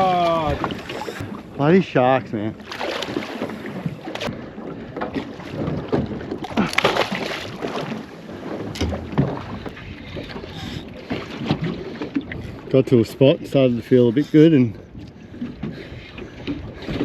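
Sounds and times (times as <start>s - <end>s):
water slapping against boat hull: 0.0s - 12.8s, 14.7s - 17.0s
splashes and knocks: 2.6s - 12.4s.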